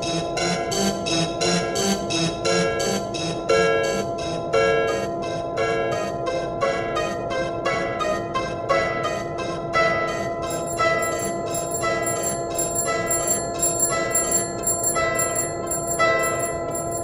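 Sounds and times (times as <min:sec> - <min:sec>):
level crossing bell clanging: 0:08.9 - 0:17.0
higher bright ringing: 0:10.5 - 0:17.0.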